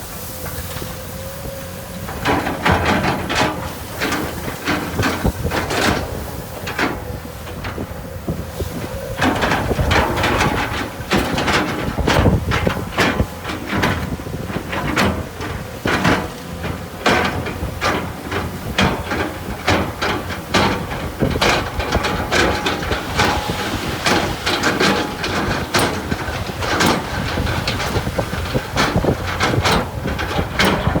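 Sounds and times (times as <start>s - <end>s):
heavy machine engine rumble: 0.0s - 31.0s
stones and gravel clanking: 9.2s - 31.0s.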